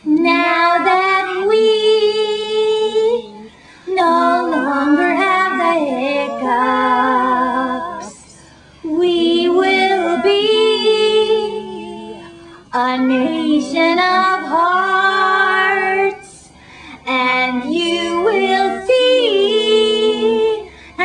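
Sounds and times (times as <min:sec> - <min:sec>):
woman singing long notes: 0:00.0 - 0:21.0.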